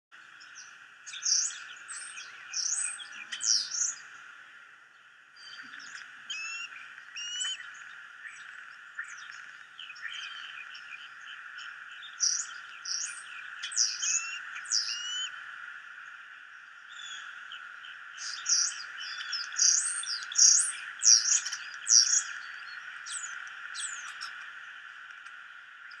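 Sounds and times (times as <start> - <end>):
starling singing: 6.3 - 7.6, 12.0 - 15.3, 18.2 - 22.3.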